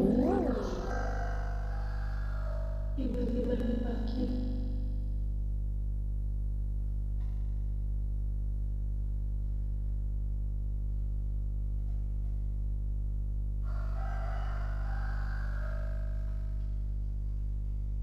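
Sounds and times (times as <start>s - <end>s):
rooster crowing: 0.8s - 2.9s, 13.6s - 16.4s.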